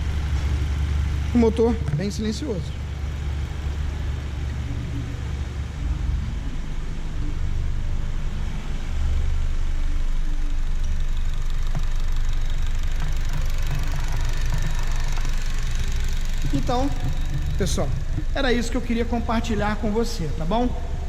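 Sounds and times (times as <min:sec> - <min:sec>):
car engine idling: 0:00.0 - 0:21.0.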